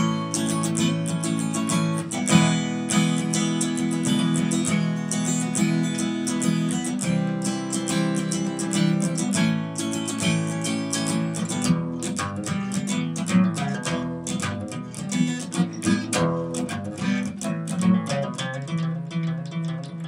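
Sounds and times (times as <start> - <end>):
acoustic guitar playing: 0.0 - 20.0.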